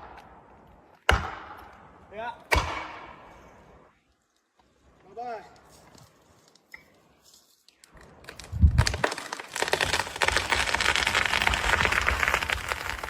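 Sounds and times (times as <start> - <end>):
wood cracking and splintering: 7.9 - 13.0.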